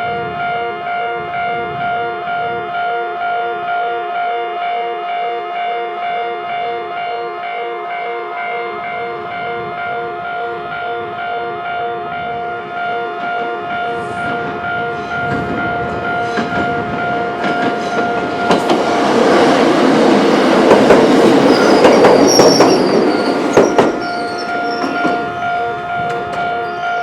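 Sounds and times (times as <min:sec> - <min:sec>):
level crossing alarm: 0:00.1 - 0:18.7, 0:21.4 - 0:27.0
train wheels clacking over rail joints: 0:14.2 - 0:26.7.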